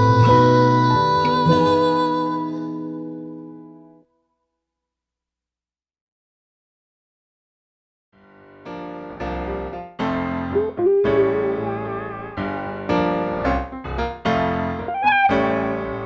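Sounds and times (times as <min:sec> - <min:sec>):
electric piano chords: 0:00.0 - 0:03.9, 0:08.4 - 0:16.0
bass line: 0:10.5 - 0:16.0.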